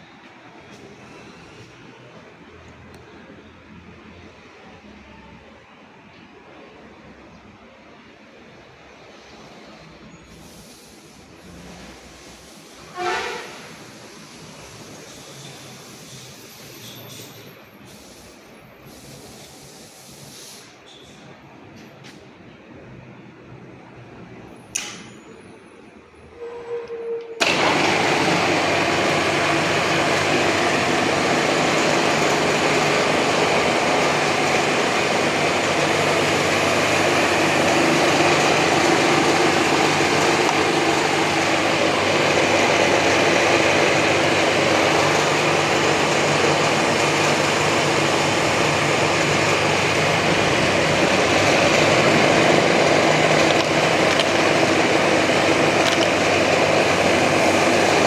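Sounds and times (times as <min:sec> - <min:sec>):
drilling machine hum: 0:27.4 - 0:58.0.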